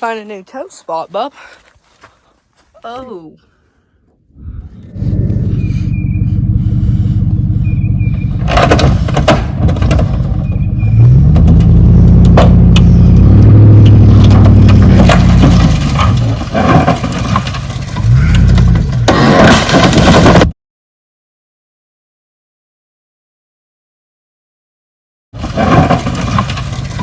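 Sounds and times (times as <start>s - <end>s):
truck engine revving: 4.4s - 20.5s, 25.4s - 27.0s
metal and glass crunching: 8.3s - 20.5s, 25.4s - 27.0s.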